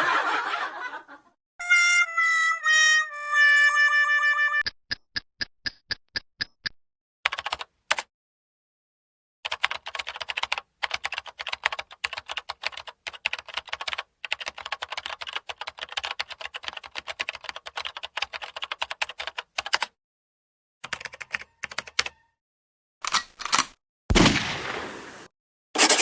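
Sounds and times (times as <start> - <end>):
typing on computer keyboard: 7.3 - 8.1, 9.4 - 20.0, 20.8 - 22.2.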